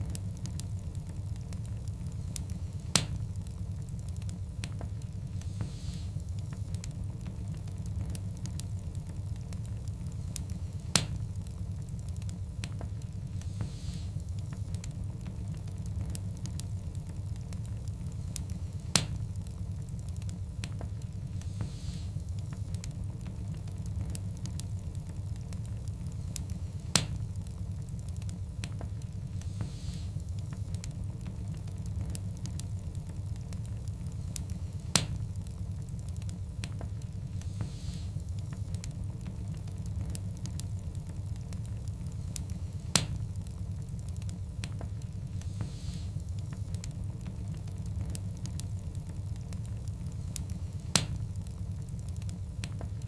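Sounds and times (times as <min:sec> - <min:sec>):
faint hiss: 0:00.0 - 0:53.0
low rumble of flames: 0:00.0 - 0:53.0
wood fire crackling and popping: 0:00.0 - 0:53.0
loud pop of fire: 0:42.9 - 0:43.2, 0:50.9 - 0:51.2.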